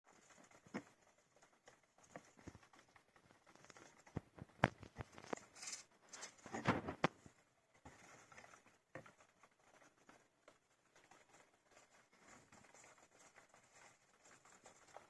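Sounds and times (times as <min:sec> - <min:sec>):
small taps and scratches: 0:00.1 - 0:15.0.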